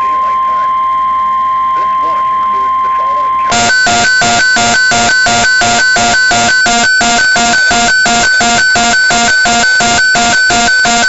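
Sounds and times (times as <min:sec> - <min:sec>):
two-tone electronic alert beep: 0:03.5 - 0:11.0.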